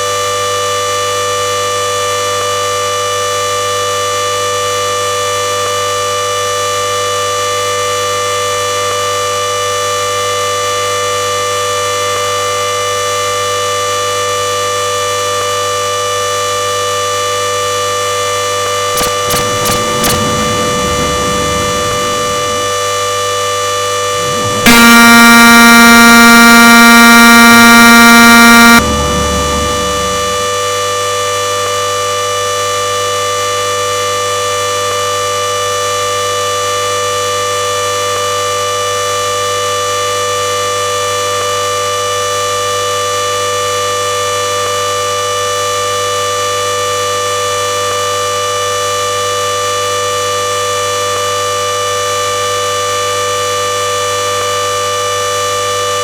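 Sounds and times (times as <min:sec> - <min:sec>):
washing machine spin whine: 0:14.6 - 0:36.0
loud buzzing tone: 0:18.6 - 0:32.6.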